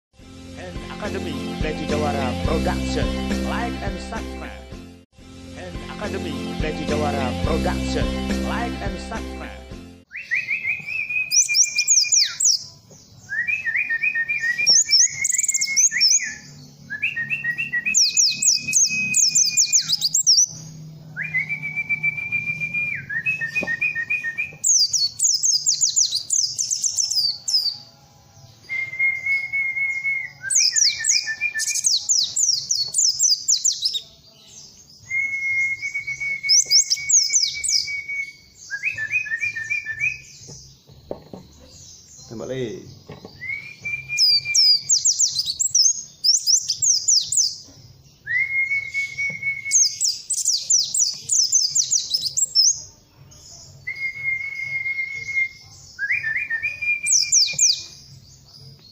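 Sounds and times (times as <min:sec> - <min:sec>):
bird twittering and whistling: 0:10.1 - 0:27.8, 0:28.6 - 0:34.0, 0:35.0 - 0:40.7, 0:41.4 - 0:47.6, 0:48.2 - 0:52.8, 0:53.7 - 0:58.1.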